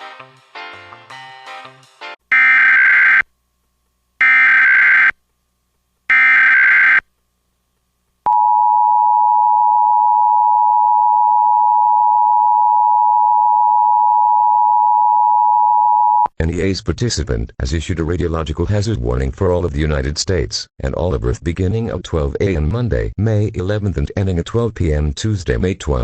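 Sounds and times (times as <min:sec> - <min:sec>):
elevator music: 0:00.0 - 0:02.2.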